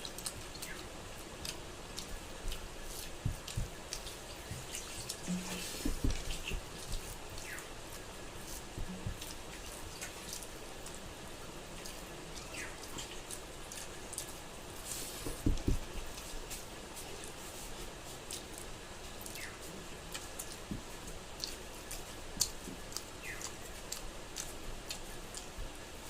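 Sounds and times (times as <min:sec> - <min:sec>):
chewing with wet mouth clicks: 0:00.0 - 0:11.0, 0:11.8 - 0:14.4, 0:18.2 - 0:25.7
soft low thumps: 0:03.2 - 0:03.8, 0:04.5 - 0:07.0, 0:15.2 - 0:16.0.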